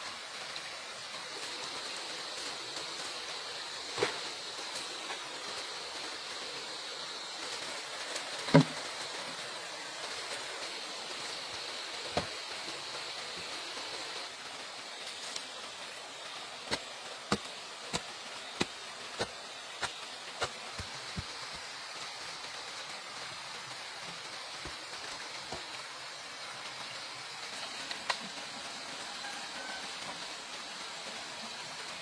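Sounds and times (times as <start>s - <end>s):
steady hiss: 0.0s - 32.0s
tool knocking on bamboo: 8.5s - 8.8s.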